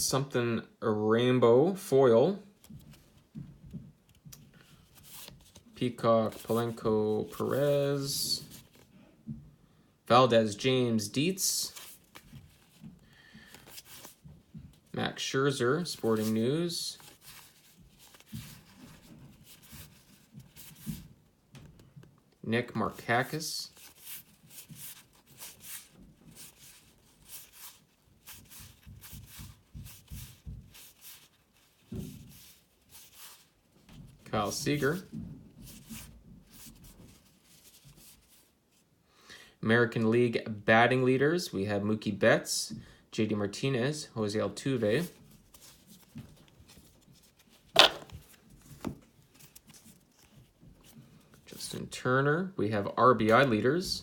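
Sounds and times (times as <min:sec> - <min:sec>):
cards flipping with papery swish: 0:04.1 - 0:09.0, 0:11.6 - 0:14.9, 0:15.7 - 0:21.1, 0:23.3 - 0:33.5, 0:45.0 - 0:51.5.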